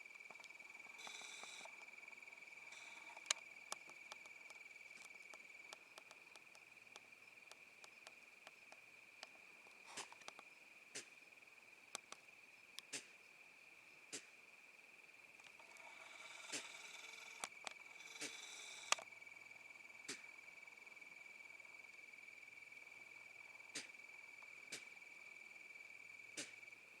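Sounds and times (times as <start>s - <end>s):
light clicks: 2.7s - 11.1s, 16.5s - 19.1s.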